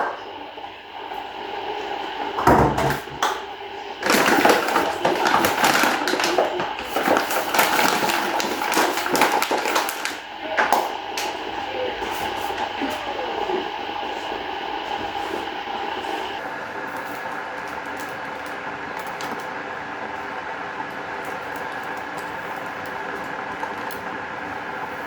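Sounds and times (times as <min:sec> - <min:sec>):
utensils and cookware clattering: 0:02.0 - 0:13.1.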